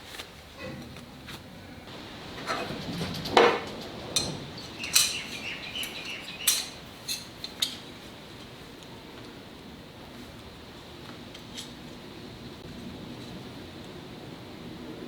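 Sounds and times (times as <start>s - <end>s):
steel plane parts clinking: 1.9s - 8.0s.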